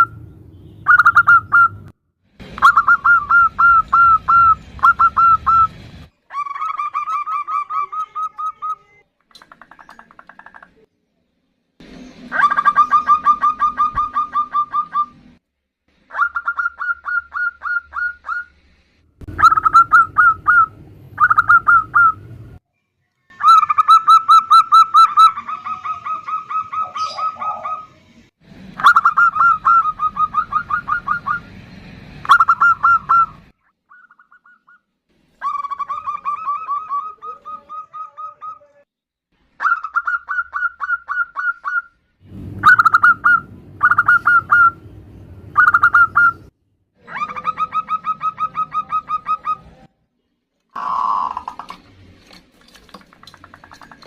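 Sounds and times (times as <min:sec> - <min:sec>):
doves cooing: 0:23.4 - 0:28.0, 0:42.4 - 0:44.8, 0:45.5 - 0:46.5, 0:50.8 - 0:52.0.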